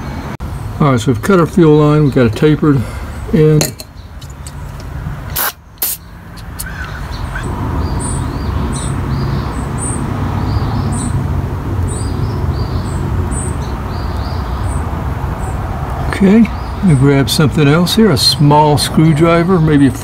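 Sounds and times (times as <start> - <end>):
birds chirping: 0.0 - 20.0.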